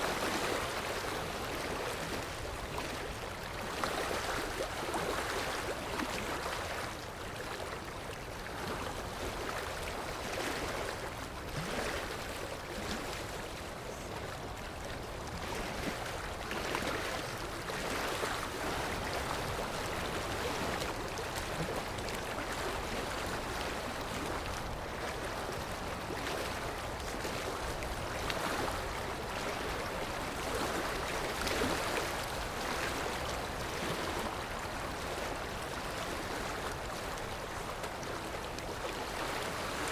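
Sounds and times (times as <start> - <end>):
sea waves washing ashore: 0.0 - 39.9.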